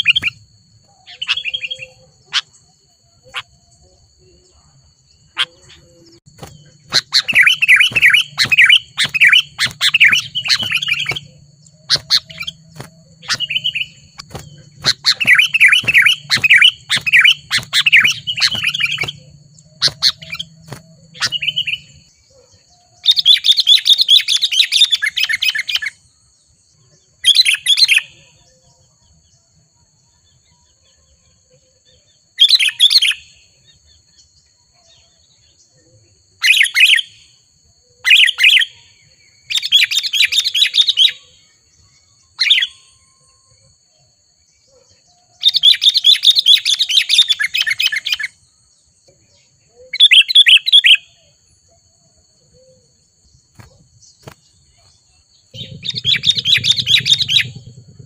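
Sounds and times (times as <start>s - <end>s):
bird singing bubbly chattering notes: 0.0s - 1.8s, 5.3s - 22.1s, 53.6s - 58.0s.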